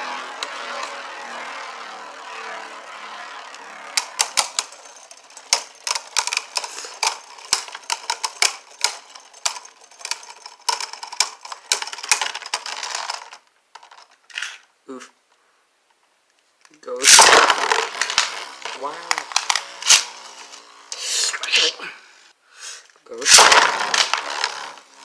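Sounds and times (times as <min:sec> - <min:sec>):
spinning tops whirring: 0:00.0 - 0:14.6, 0:16.9 - 0:21.9, 0:23.1 - 0:25.0
tops clacking together: 0:04.0 - 0:14.2.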